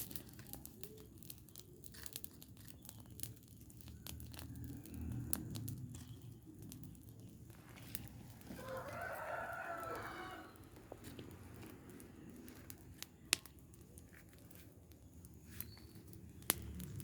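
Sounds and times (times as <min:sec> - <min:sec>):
fire crackling and popping: 0:00.0 - 0:17.0
low rumble of fire: 0:00.0 - 0:17.0.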